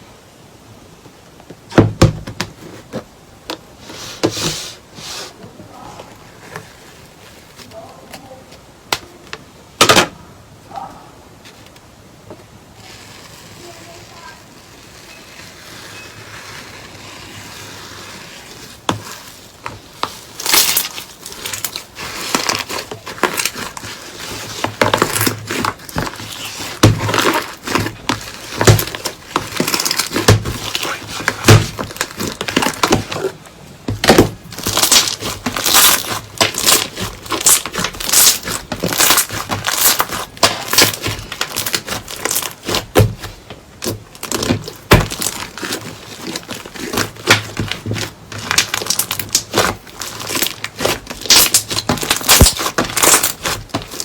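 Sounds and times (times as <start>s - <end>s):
slime crackling and popping: 12.8s - 54.0s.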